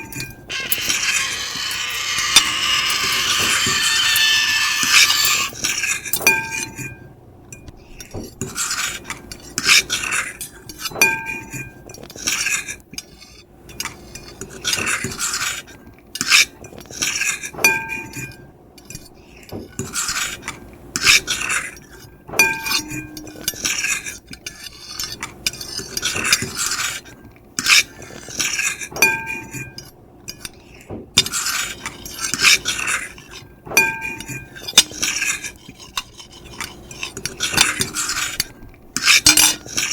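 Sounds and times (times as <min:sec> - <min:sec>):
plate ringing: 0:00.0 - 0:05.6, 0:06.2 - 0:07.0, 0:39.3 - 0:39.9
fork and knife scraping a plate: 0:00.0 - 0:06.9, 0:31.2 - 0:39.9.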